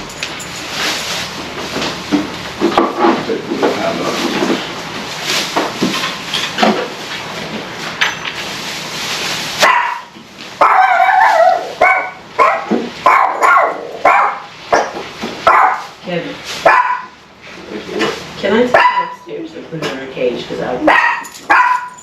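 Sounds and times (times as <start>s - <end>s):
dog barking loudly: 9.6s - 16.0s, 16.6s - 17.2s, 18.7s - 19.3s, 20.9s - 22.0s.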